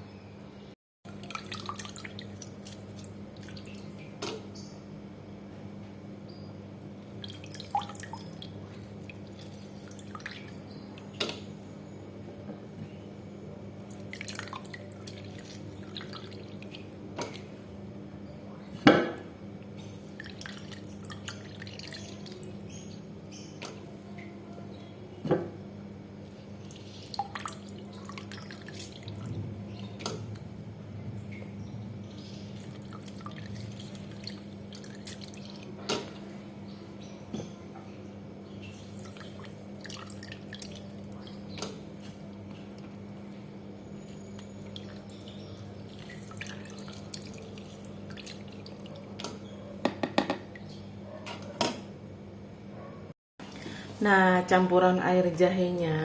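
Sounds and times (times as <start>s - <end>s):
steady low hum: 0.0s - 49.9s
liquid dripping: 1.1s - 4.7s, 7.0s - 11.6s, 13.8s - 17.5s, 19.7s - 24.4s, 26.6s - 30.5s, 31.2s - 36.3s, 38.5s - 49.7s.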